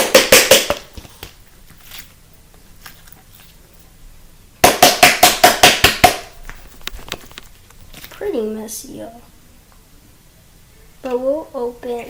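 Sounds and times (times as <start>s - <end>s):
plastic container being banged: 0.0s - 0.9s, 4.6s - 6.3s.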